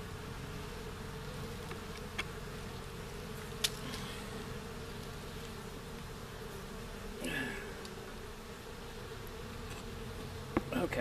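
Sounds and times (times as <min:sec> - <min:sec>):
bees buzzing: 0:00.0 - 0:11.0.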